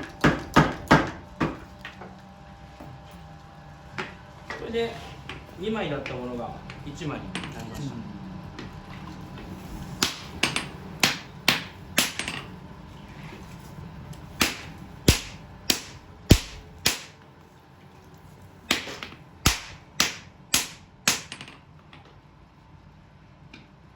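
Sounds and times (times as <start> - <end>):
hammer striking steel on anvil: 10.0 - 12.4, 14.4 - 17.2, 18.7 - 21.5.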